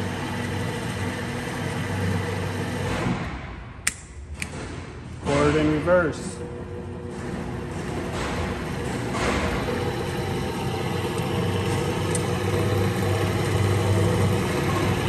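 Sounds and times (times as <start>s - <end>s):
motor and gearbox hum: 0.0s - 15.0s.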